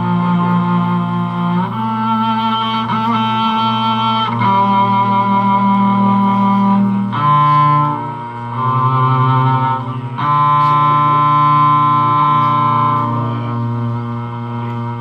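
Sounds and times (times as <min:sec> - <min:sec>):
bowed cello music: 0:00.0 - 0:15.0.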